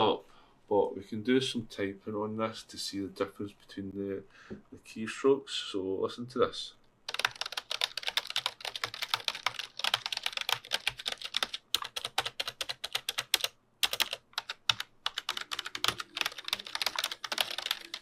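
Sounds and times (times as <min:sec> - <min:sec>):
mechanical keyboard typing: 0:07.1 - 0:18.0.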